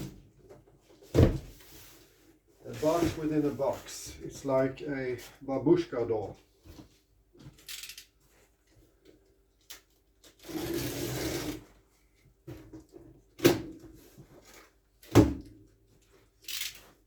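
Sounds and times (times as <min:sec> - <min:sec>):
cardboard scraping and rustling: 0:01.0 - 0:03.8.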